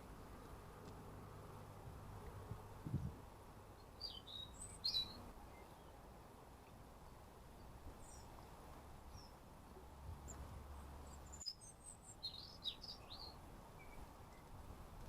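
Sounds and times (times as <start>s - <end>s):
small birds chirping: 2.9s - 6.0s, 6.6s - 9.4s, 10.2s - 14.6s.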